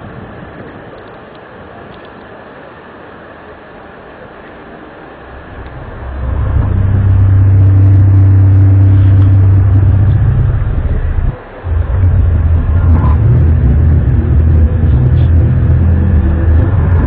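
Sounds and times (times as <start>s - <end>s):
loud low droning hum: 5.1s - 17.0s.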